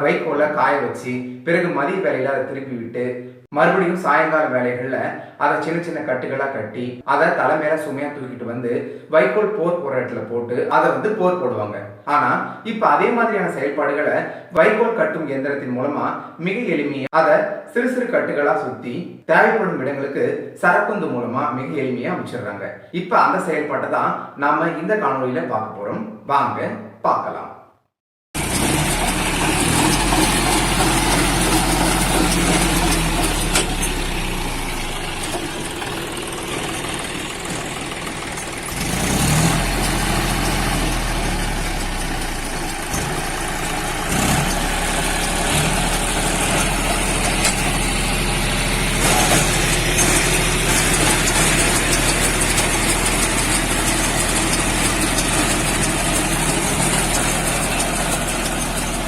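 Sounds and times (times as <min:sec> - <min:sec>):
engine running steadily: 0:28.4 - 0:59.0.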